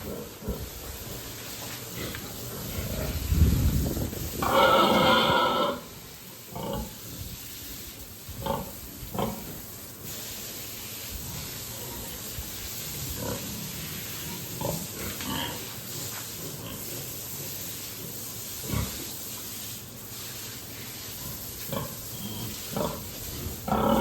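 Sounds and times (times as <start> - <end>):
pig calling: 4.4 - 5.9
pigs grunting: 4.4 - 5.9, 6.5 - 7.0, 21.3 - 24.0.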